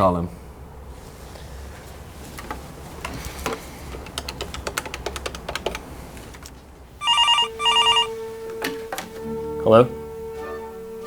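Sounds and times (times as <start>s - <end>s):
telephone ringing: 7.0s - 8.2s.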